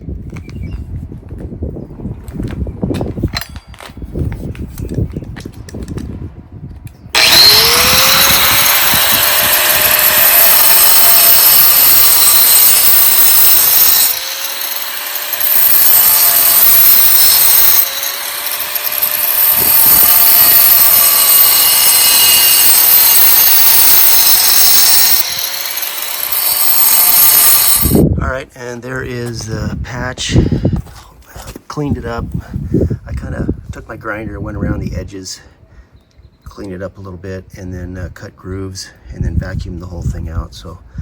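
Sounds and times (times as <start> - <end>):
angle grinder cutting plaster: 7.1 - 28.1.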